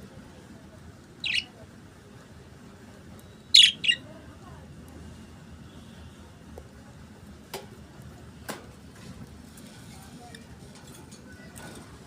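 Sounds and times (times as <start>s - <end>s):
budgerigars chirping: 1.2s - 1.5s, 3.6s - 4.0s.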